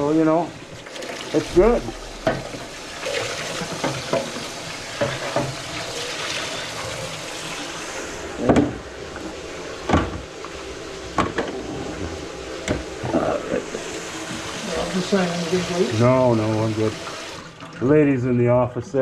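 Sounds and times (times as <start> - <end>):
tap water running into sink: 0.0 - 18.3
sharp knocks: 1.5 - 2.9.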